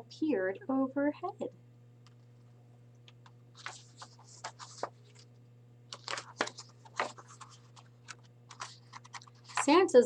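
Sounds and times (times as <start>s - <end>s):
paper pages rustling: 3.5s - 9.8s.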